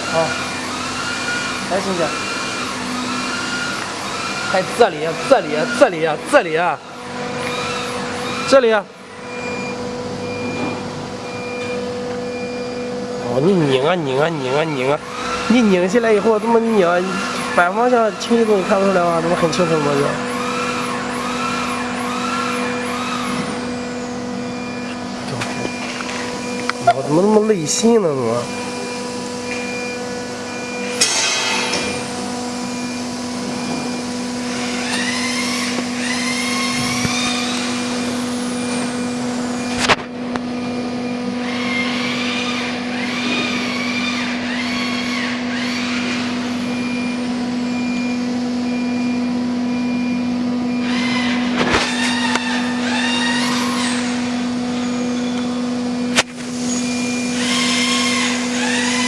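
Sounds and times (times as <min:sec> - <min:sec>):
motors whining: 0:00.0 - 0:59.0.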